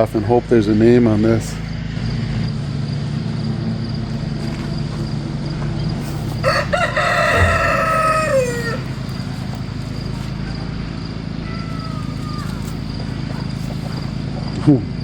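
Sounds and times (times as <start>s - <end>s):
rooster crowing: 6.3s - 10.6s.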